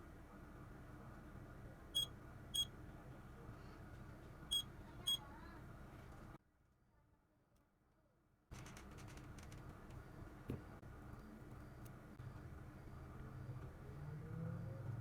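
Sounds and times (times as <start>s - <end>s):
high-pitched electronic beeps: 2.0s - 2.7s.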